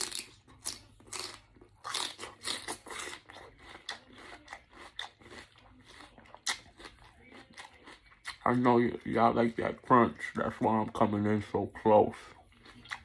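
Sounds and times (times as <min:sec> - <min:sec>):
crunchy chewing: 0:00.0 - 0:09.1, 0:12.2 - 0:13.0.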